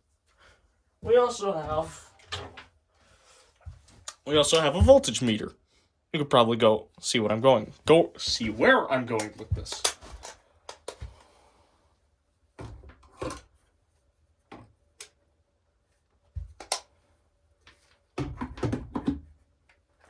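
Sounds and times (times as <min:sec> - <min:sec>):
handling clicks and rustles: 0:08.2 - 0:11.1.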